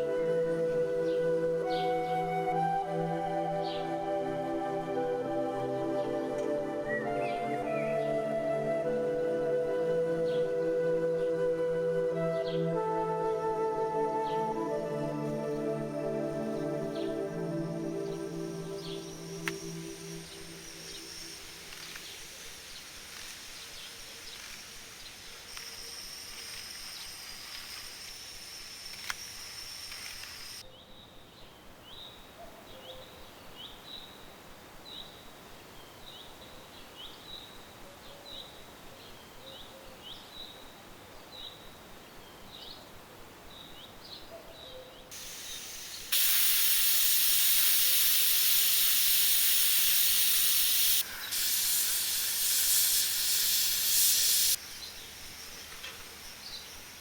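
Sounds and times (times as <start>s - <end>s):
loud steady hiss: 0.0s - 30.7s, 45.1s - 57.0s
small bird chirping: 15.9s - 31.0s, 45.5s - 57.0s.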